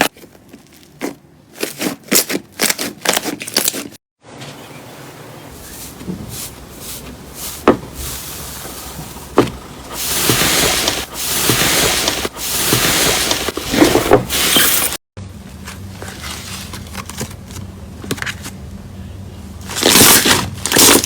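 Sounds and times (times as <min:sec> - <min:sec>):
slime squishing and crackling: 0:19.7 - 0:21.0.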